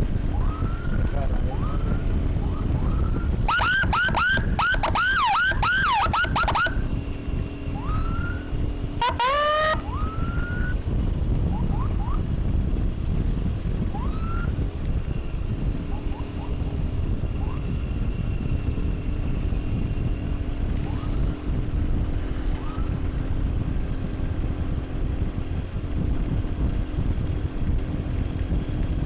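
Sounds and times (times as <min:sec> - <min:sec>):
road and wind rumble: 0:00.0 - 0:29.0
emergency siren yelping: 0:00.2 - 0:07.0, 0:07.7 - 0:10.8, 0:11.4 - 0:12.3, 0:13.9 - 0:14.6, 0:15.9 - 0:18.6, 0:20.7 - 0:21.6, 0:22.5 - 0:23.2
faint siren chirps: 0:00.3 - 0:07.0, 0:07.6 - 0:10.8, 0:11.5 - 0:12.2, 0:13.9 - 0:21.6, 0:22.4 - 0:23.2.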